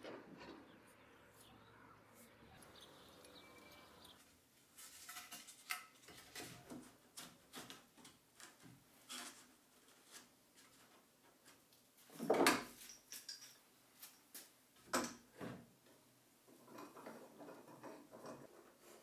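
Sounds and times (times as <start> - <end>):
objects clicking and clinking: 12.3 - 15.2.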